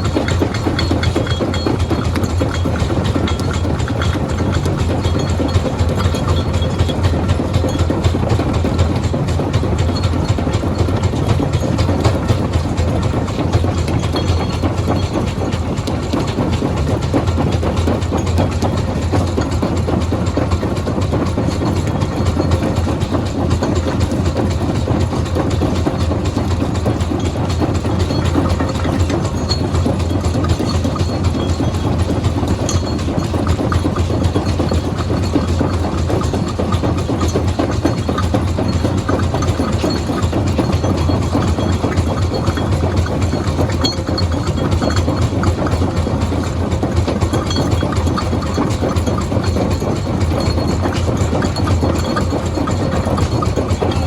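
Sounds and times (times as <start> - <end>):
heavy machinery low rumble: 0.0 - 54.0
rattling and clatter: 0.0 - 54.0.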